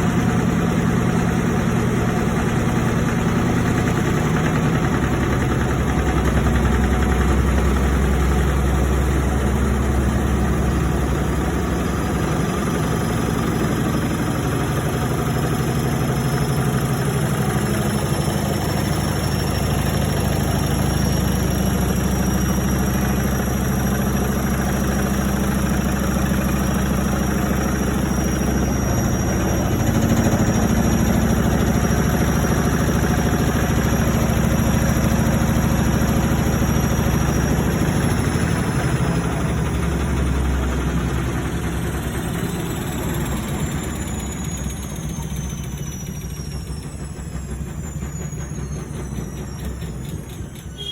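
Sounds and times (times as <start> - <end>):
washing machine droning: 0.0 - 50.9
faint high whine: 25.6 - 50.9.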